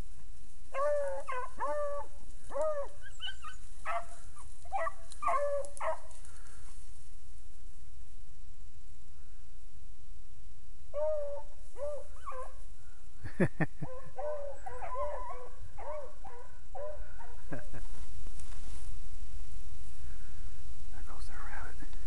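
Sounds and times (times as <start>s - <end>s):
dogs baying: 0.8s - 6.1s, 13.8s - 17.4s.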